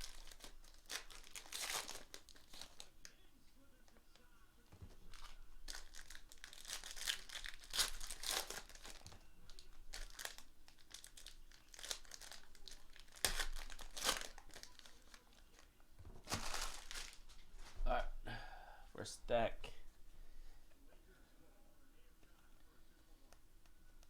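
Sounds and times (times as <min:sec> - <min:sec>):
plastic wrappers tearing and crinkling: 0:00.0 - 0:03.2, 0:04.8 - 0:17.7.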